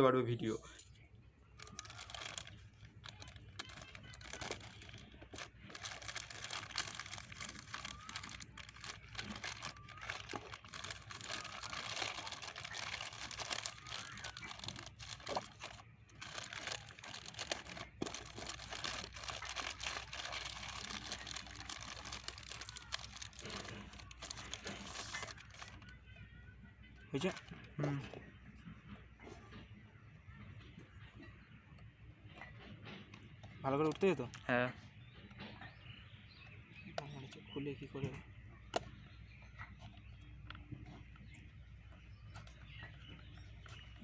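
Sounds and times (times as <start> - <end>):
plastic packaging crinkling: 1.6 - 26.0.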